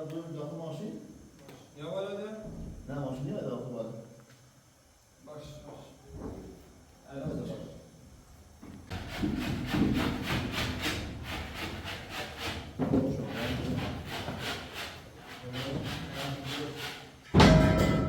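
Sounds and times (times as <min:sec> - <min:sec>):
hand saw cutting wood: 0:08.9 - 0:17.2.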